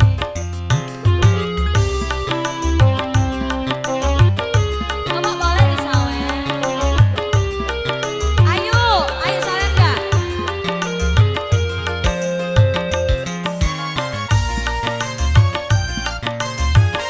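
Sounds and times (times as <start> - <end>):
hand drums and bass beat: 0.0 - 17.0
held keyboard notes: 0.0 - 17.0
sliding pitch melody: 0.0 - 17.0.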